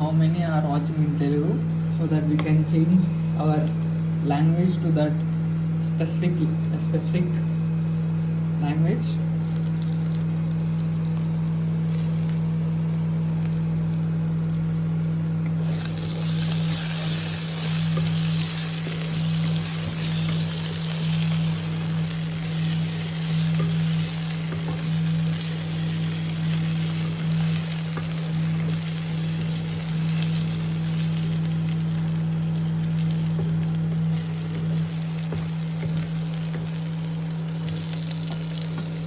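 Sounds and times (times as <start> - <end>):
cooktop hum: 0.0 - 39.0
onions sizzling in oil: 15.6 - 39.0.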